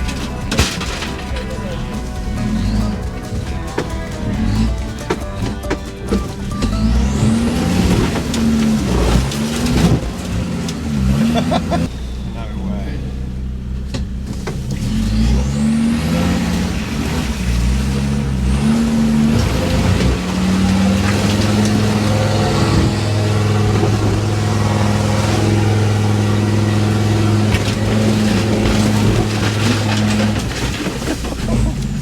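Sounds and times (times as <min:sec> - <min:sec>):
off-road vehicle engine revving: 0:00.0 - 0:32.0.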